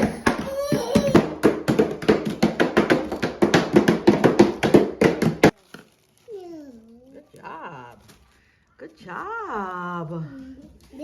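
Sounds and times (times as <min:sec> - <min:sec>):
hammers pounding bagged cookies: 0:00.0 - 0:05.9.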